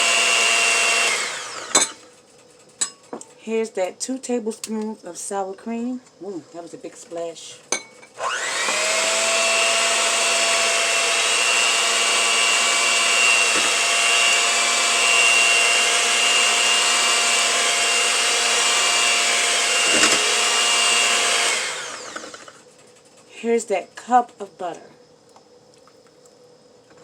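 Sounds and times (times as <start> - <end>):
electric mixer motor running: 0.0 - 2.0, 8.2 - 22.6.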